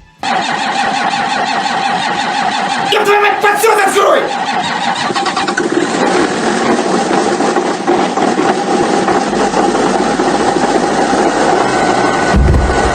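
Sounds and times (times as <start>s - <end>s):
engine idling: 0.0s - 12.9s
low hum: 4.4s - 12.9s.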